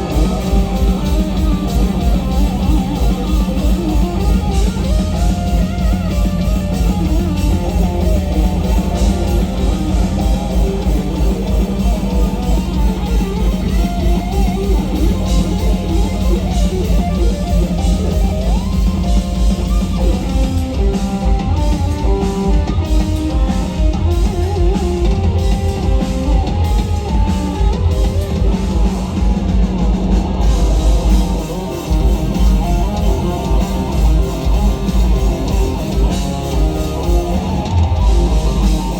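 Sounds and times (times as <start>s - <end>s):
bass guitar: 0.0s - 38.9s
fast drums: 0.0s - 38.9s
lead electric guitar melody: 0.0s - 38.9s.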